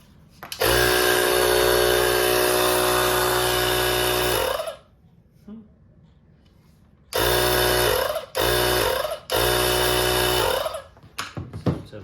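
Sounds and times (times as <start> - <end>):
air compressor motor running: 0.5 - 4.9, 7.1 - 11.0.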